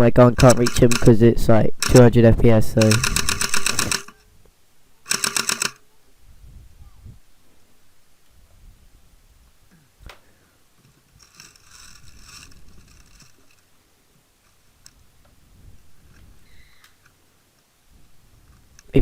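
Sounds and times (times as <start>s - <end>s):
sharp click: 0.4s - 1.1s, 2.8s - 4.2s
handling rustle: 0.4s - 4.3s, 10.8s - 13.8s
distant high-pitched scream: 16.4s - 17.0s.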